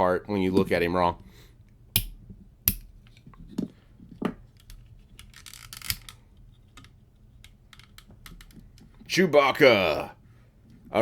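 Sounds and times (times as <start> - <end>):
plastic toy parts clicking: 4.6 - 6.2.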